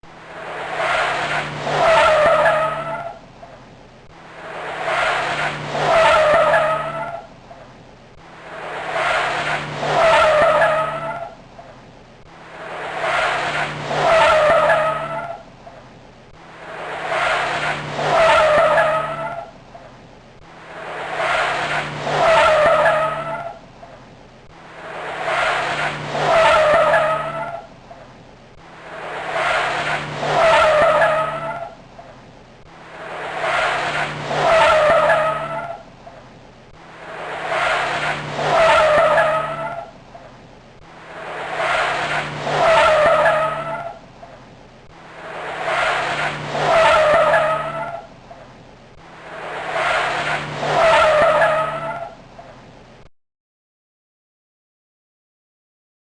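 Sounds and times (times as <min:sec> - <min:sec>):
tyres skidding squeal: 0:00.4 - 0:03.3, 0:04.4 - 0:07.4, 0:08.5 - 0:11.5, 0:12.6 - 0:15.6, 0:16.7 - 0:19.6, 0:20.7 - 0:23.7, 0:24.8 - 0:27.8, 0:28.9 - 0:31.9, 0:33.0 - 0:36.0, 0:37.0 - 0:40.0, 0:41.1 - 0:44.1, 0:45.2 - 0:48.2, 0:49.2 - 0:52.3.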